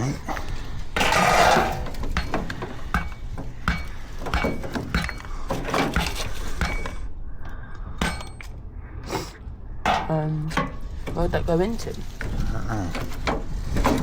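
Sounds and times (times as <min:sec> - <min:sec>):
metal and plastic parts clattering: 0:00.3 - 0:07.1, 0:12.3 - 0:14.0.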